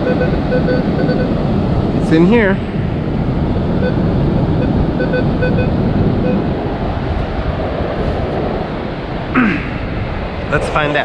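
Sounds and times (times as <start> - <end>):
metal detector beeps: 0.0 - 1.4, 3.8 - 6.4
wind noise on microphone: 0.0 - 11.0.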